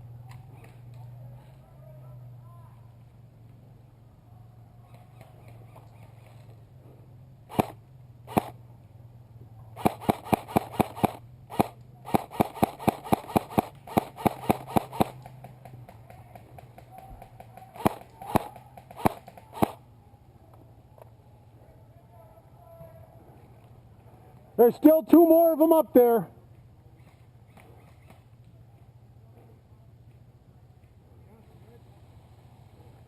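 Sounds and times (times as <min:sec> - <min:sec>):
airsoft rifle shots: 0:07.5 - 0:08.6, 0:09.8 - 0:19.8.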